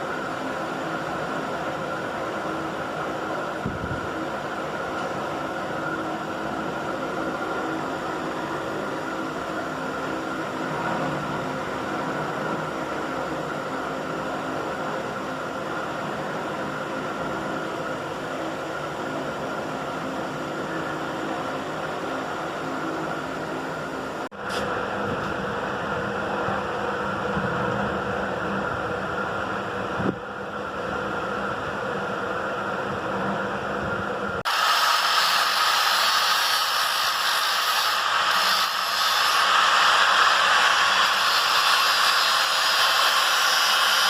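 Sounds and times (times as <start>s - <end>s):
small electric motor whirring: 34.5s - 44.0s.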